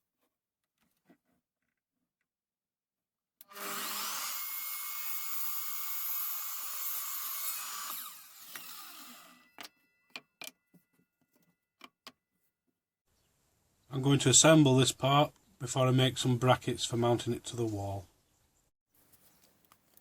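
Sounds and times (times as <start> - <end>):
power saw cutting wood: 3.4 - 9.6.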